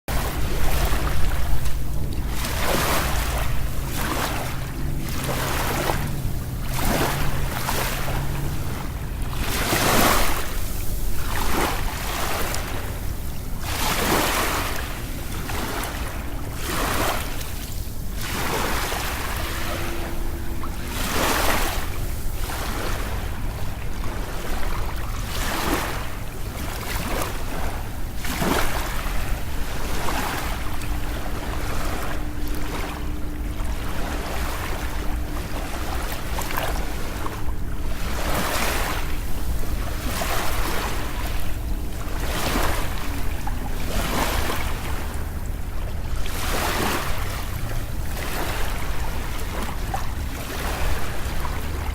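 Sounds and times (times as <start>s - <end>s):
low rumble: 0.1s - 13.7s, 14.4s - 28.1s
sea waves breaking: 0.1s - 51.9s.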